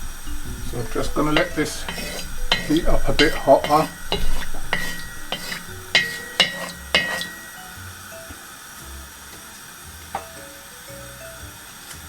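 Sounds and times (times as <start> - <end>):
utensil clinking against pot: 0.0 - 7.8
faint background music: 0.0 - 12.0.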